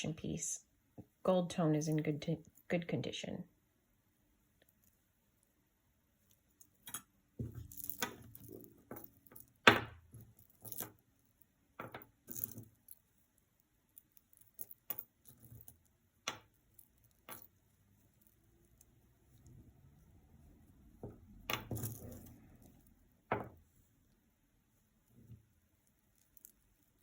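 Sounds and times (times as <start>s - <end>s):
metal jewelry clinking: 6.2s - 19.7s, 20.6s - 23.6s, 25.6s - 27.0s.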